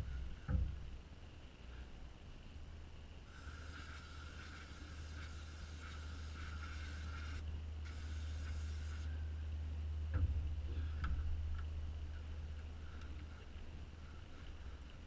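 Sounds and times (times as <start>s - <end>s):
low hum: 0.0s - 15.0s
aerosol spray hissing: 3.3s - 9.1s.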